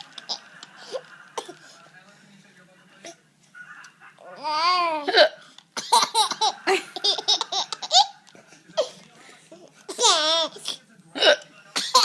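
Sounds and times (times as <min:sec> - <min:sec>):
baby laughing: 0:00.0 - 0:01.6, 0:05.8 - 0:08.2, 0:09.9 - 0:10.8.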